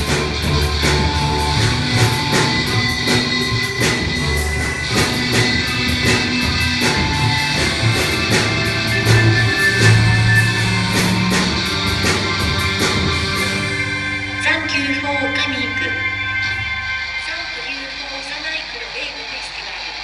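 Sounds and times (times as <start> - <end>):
drum kit steady beat: 0.0 - 16.6
rock guitar: 0.0 - 17.3.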